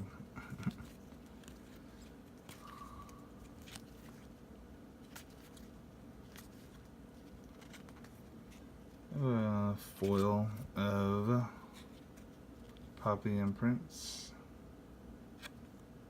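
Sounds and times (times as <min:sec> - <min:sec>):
low room hum: 0:00.0 - 0:16.0
trading cards being flipped through: 0:00.6 - 0:04.4, 0:05.0 - 0:09.0, 0:15.4 - 0:15.8.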